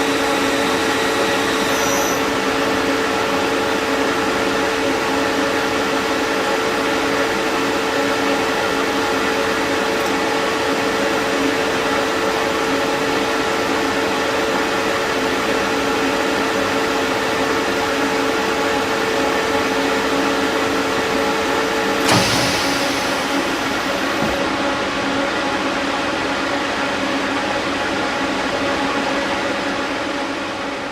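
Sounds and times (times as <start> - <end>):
lathe running: 0.0 - 3.0, 21.8 - 24.5.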